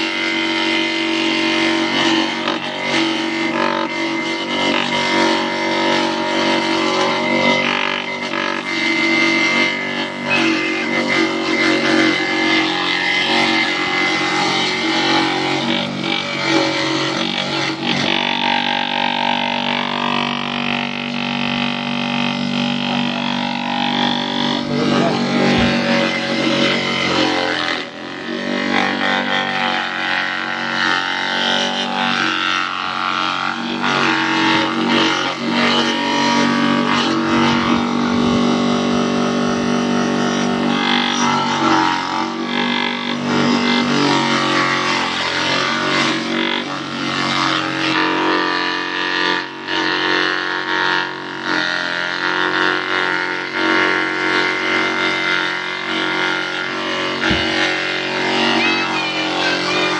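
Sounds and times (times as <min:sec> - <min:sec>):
chopper machine motor hum: 0:00.8 - 0:30.9.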